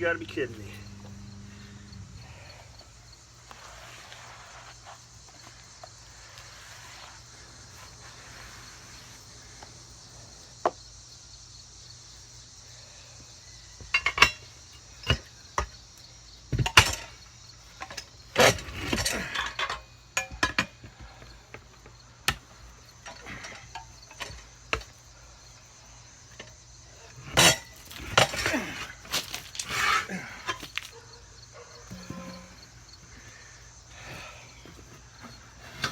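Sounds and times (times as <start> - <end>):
metal tire tools clanking: 13.8 - 15.8, 16.5 - 25.0, 26.2 - 31.0, 31.6 - 35.9.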